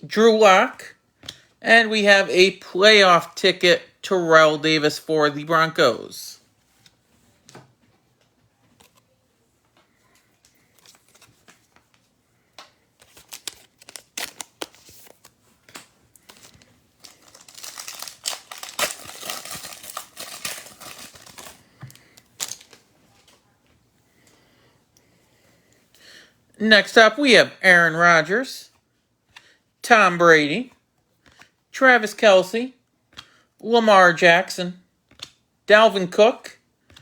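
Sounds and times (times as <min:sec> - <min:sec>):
plastic wrapper crinkling and tearing: 0:12.9 - 0:23.4.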